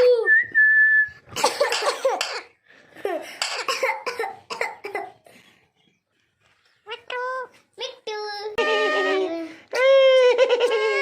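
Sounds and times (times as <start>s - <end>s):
parrot raspy coughing sounds: 1.3s - 5.7s.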